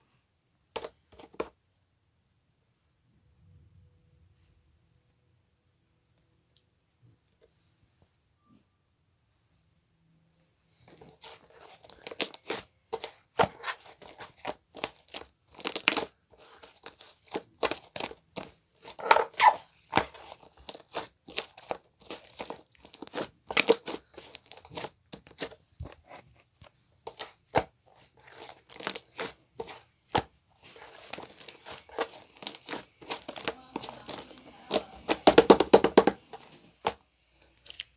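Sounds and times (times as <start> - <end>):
crinkling and crackling: 10.8 - 37.9.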